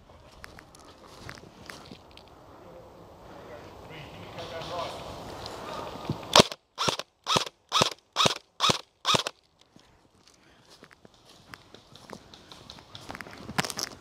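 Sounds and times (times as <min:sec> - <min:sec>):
airsoft gun shots: 0:06.4 - 0:09.3.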